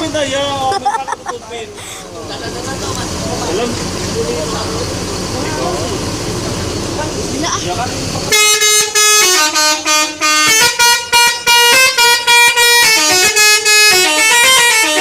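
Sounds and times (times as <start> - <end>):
musical vehicle air horn melody: 8.3 - 15.0.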